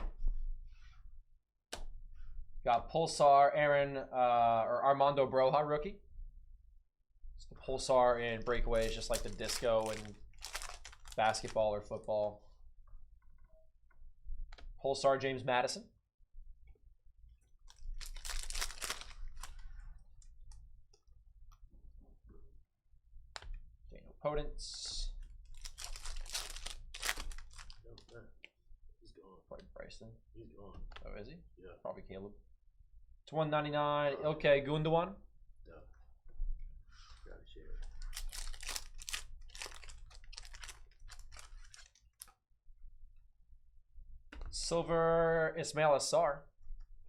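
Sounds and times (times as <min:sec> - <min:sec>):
packaging rustling and crinkling: 0:08.5 - 0:11.6, 0:17.7 - 0:19.8, 0:25.4 - 0:27.9, 0:37.8 - 0:42.3.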